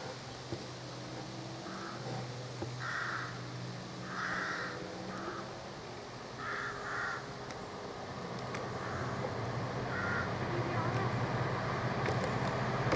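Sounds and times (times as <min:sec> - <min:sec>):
crows cawing: 0:01.6 - 0:02.0, 0:02.8 - 0:03.4, 0:04.0 - 0:05.5, 0:06.4 - 0:07.3, 0:08.8 - 0:09.2, 0:09.9 - 0:10.3.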